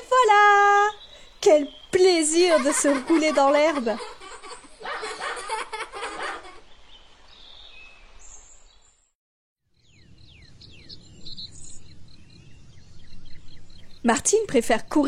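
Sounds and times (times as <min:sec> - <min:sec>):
countryside ambience: 0:00.0 - 0:09.1, 0:09.7 - 0:15.0
children giggling: 0:02.3 - 0:06.7
birds chirping falling whistles: 0:09.8 - 0:14.0.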